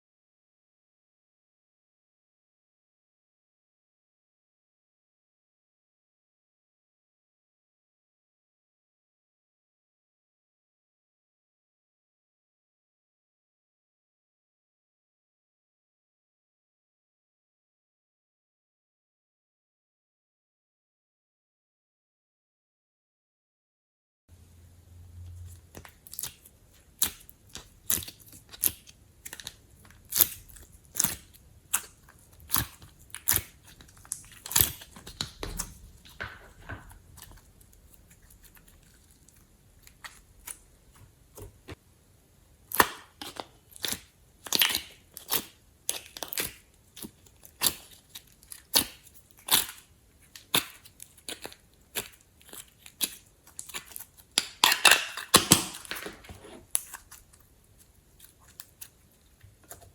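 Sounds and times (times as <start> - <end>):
slime squished by hand: 25.4 - 41.7, 42.7 - 59.0.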